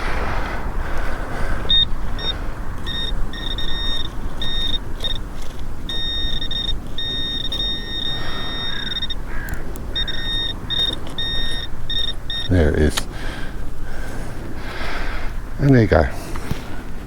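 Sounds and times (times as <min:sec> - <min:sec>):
metal detector beeping: 0:01.4 - 0:14.8.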